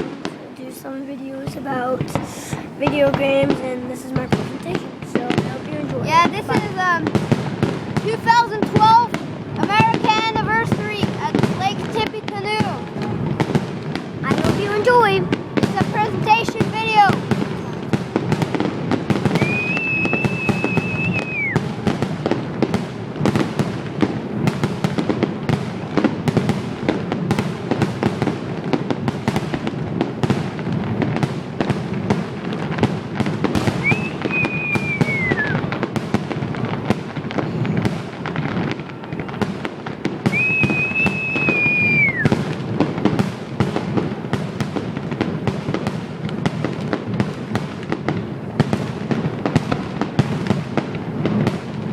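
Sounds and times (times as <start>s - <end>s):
fireworks crackling bangs and pops: 0.0s - 51.9s
firework whistles: 19.1s - 22.1s, 33.5s - 35.8s, 37.2s - 42.5s.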